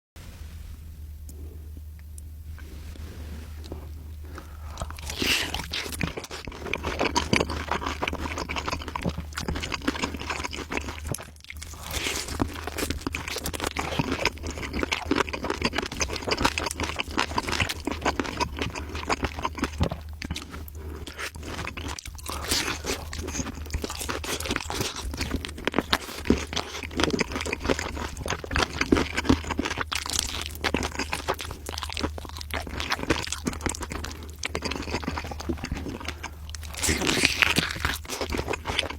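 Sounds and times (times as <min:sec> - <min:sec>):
steady low hum: 0:00.2 - 0:38.9
crunching and chewing crisp food: 0:01.0 - 0:38.9.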